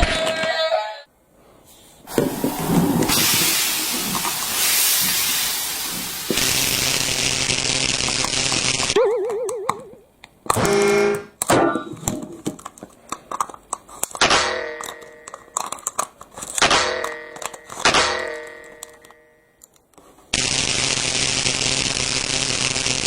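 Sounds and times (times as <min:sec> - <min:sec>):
toy train steam hiss: 0:01.7 - 0:09.0
steady hum: 0:02.1 - 0:09.0.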